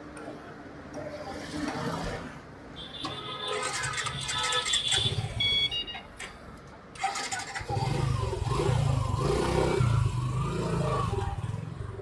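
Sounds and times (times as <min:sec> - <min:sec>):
motorcycle engine starting and running: 0:06.9 - 0:12.0.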